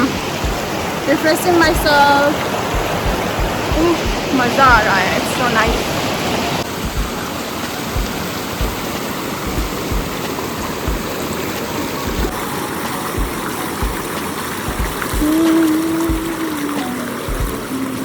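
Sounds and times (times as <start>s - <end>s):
faint dull low bumps: 0.0s - 1.0s, 1.6s - 6.0s, 6.7s - 7.3s, 7.9s - 11.2s, 14.7s - 16.5s
running water rushing: 0.0s - 18.0s.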